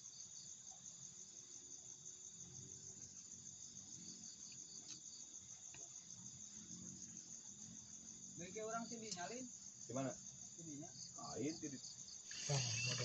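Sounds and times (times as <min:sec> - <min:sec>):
high-pitched insect trill: 0:00.0 - 0:13.0
pulsing insect chirp: 0:00.0 - 0:13.0.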